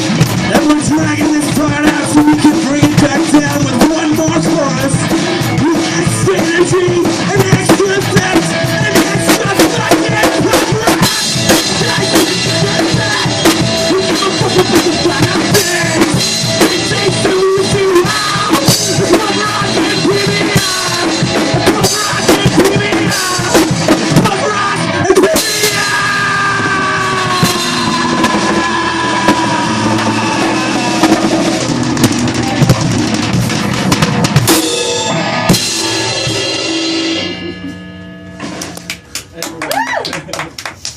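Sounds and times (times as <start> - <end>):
punk rock band playing: 0.0 - 40.9
bass drum and snare hits: 26.6 - 34.7.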